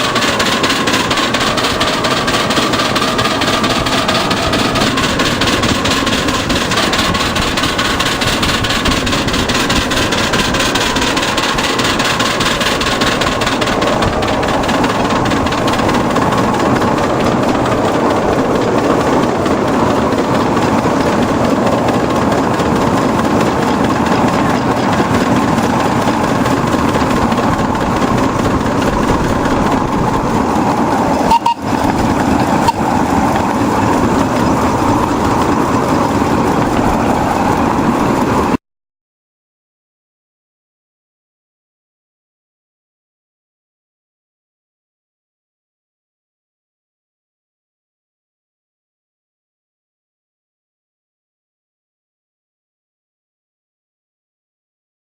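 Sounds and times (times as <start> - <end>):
vehicle rolling noise: 0.0 - 38.6.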